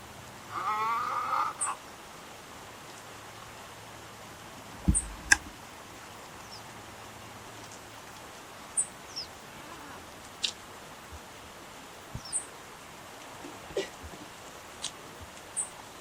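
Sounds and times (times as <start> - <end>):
low thump: 4.8 - 5.6.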